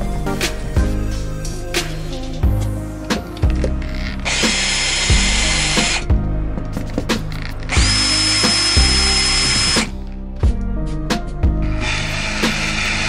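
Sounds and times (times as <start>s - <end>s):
background music with a beat: 0.0s - 13.0s
cordless drill driving screws: 4.2s - 6.0s, 7.4s - 9.9s.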